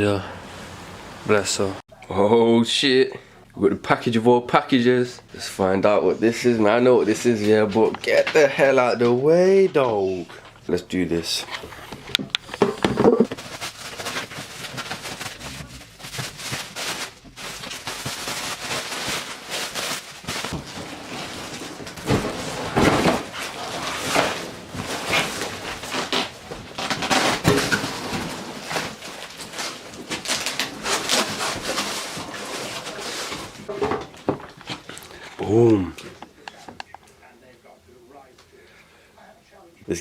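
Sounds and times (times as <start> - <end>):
packaging ripping and rustling: 12.5 - 33.7.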